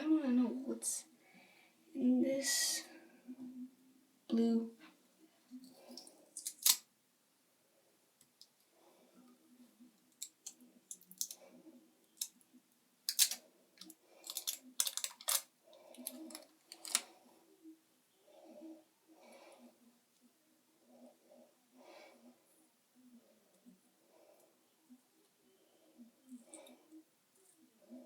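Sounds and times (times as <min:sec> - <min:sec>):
plastic casing clicking and snapping: 0:06.4 - 0:06.8, 0:10.2 - 0:11.4, 0:13.1 - 0:17.0.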